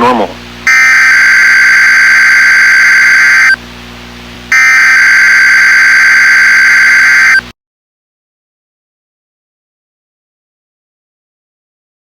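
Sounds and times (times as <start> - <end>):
weather radio alert beeps: 0.7 - 3.6, 4.5 - 7.4.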